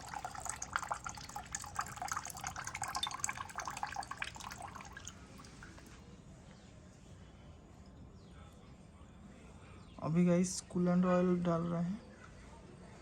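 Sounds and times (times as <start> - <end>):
coolant trickling and splattering: 0.0 - 5.9.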